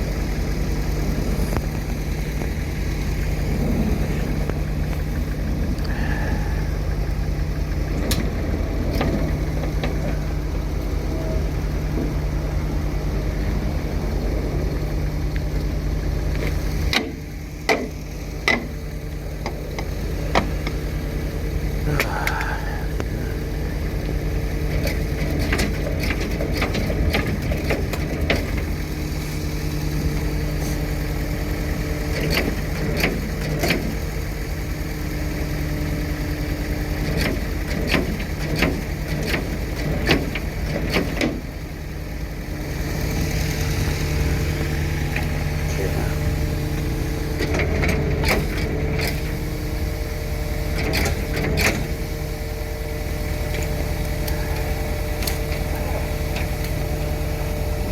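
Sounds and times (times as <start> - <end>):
vehicle engine idling: 0.0 - 57.9.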